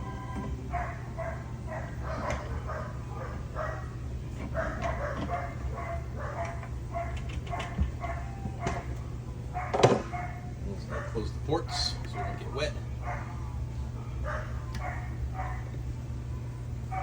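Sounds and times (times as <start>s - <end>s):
steady low hum: 0.0s - 17.0s
dog barking rapidly: 0.7s - 8.9s, 9.5s - 13.4s, 14.2s - 15.7s.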